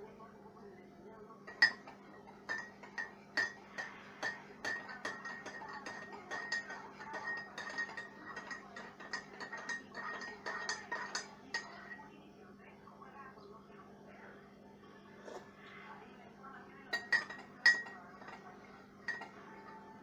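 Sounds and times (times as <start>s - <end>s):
spoon clinking in mug: 1.5s - 12.0s, 16.9s - 20.0s.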